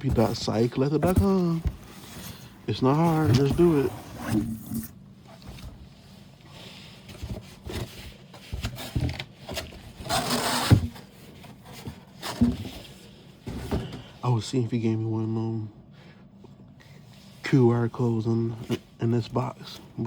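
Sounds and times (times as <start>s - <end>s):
rustling in cardboard box: 0.0s - 13.8s.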